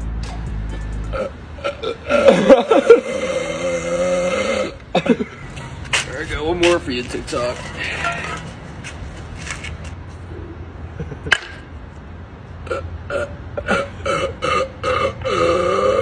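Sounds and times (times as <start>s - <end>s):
person burping loudly: 1.1s - 5.2s, 12.6s - 16.0s.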